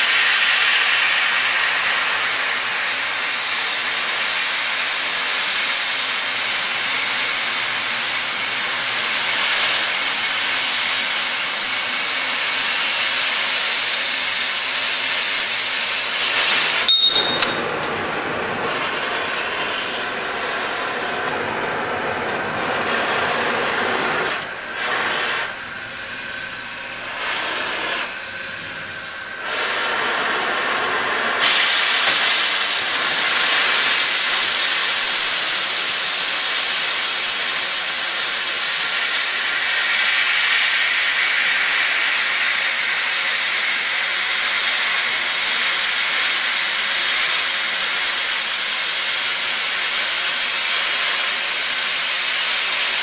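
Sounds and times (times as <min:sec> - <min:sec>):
cutting torch hissing: 0:00.0 - 0:16.9, 0:26.9 - 0:28.6, 0:29.4 - 0:53.0.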